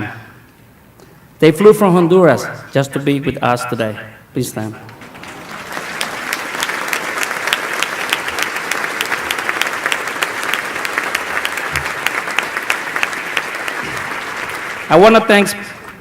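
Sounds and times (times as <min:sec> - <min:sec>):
audience applauding: 0:04.9 - 0:16.0.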